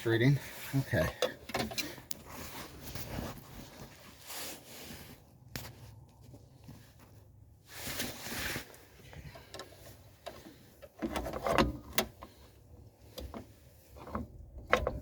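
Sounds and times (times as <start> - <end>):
clicks and knocks of parts: 1.1 - 2.2
rustling scrape: 2.2 - 6.0, 6.6 - 9.2.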